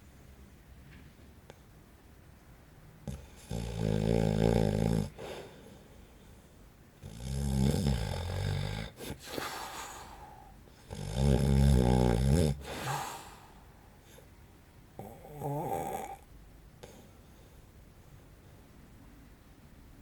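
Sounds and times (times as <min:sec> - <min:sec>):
man snoring: 0:03.1 - 0:05.4, 0:07.0 - 0:13.6, 0:15.0 - 0:16.2.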